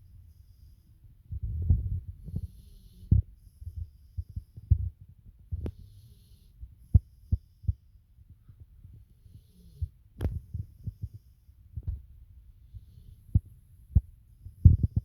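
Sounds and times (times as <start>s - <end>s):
steady low hum: 0.0s - 15.0s
faint breathy hiss: 2.0s - 4.8s, 5.6s - 11.7s, 12.6s - 13.9s.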